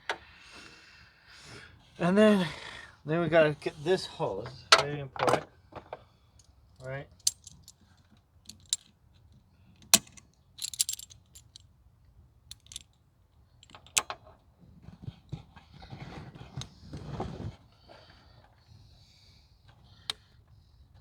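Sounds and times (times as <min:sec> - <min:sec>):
jingling clatter: 0:07.1 - 0:07.8, 0:08.5 - 0:08.9, 0:10.0 - 0:11.6, 0:12.5 - 0:12.9, 0:13.6 - 0:14.0
metal tools clinking: 0:07.1 - 0:07.8, 0:08.5 - 0:08.9, 0:10.0 - 0:11.6, 0:12.5 - 0:12.9, 0:13.6 - 0:14.0.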